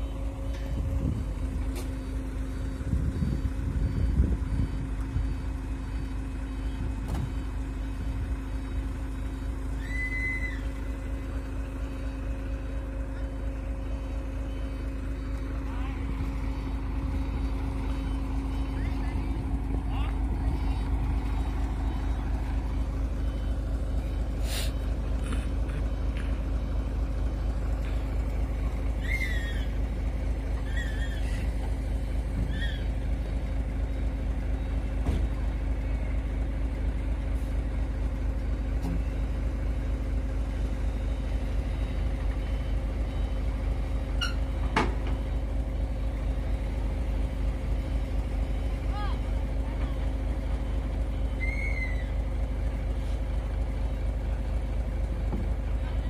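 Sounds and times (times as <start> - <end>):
truck diesel engine running: 0.0 - 56.0
short high squeaks: 29.0 - 29.8, 30.6 - 31.5, 32.4 - 33.0, 44.1 - 44.5.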